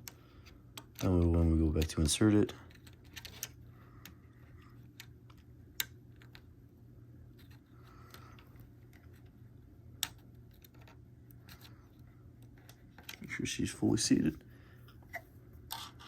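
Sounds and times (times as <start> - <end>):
plastic clicks and handling: 0.0 - 6.5, 10.0 - 13.3.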